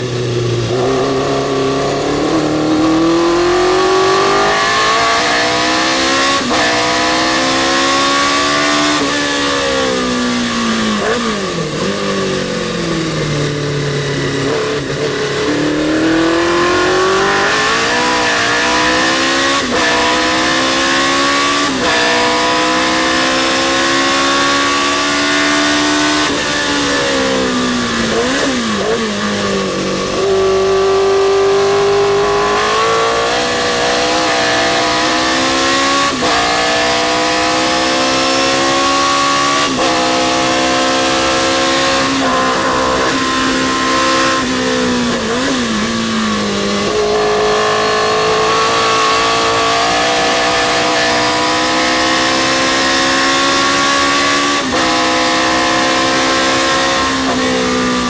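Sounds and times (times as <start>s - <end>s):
racing car engine at full throttle: 0.0s - 58.0s.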